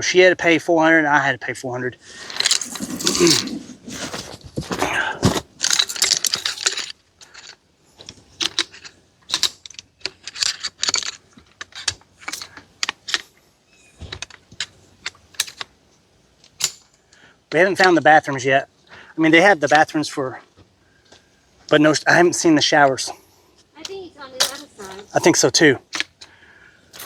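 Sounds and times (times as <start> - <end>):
handling rustling and clattering: 2.0 - 18.1, 23.2 - 27.0.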